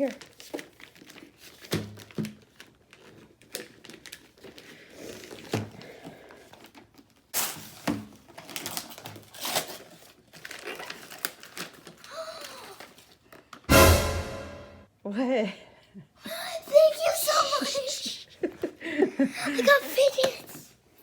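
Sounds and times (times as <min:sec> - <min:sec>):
paper crinkling and tearing: 0:00.3 - 0:04.6, 0:08.5 - 0:12.8.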